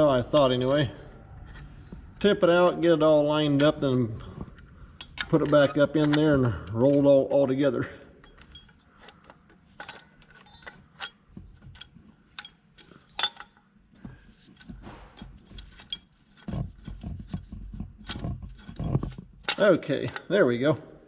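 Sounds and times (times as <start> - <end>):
low rumble: 0.0 - 5.3
metal parts clicking and clinking: 4.6 - 7.0, 8.2 - 13.7, 14.4 - 20.3.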